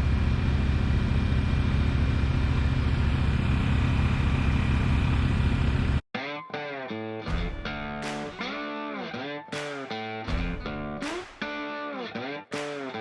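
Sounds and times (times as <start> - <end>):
boat motor droning: 0.0 - 6.0
electric guitar music: 6.2 - 13.0.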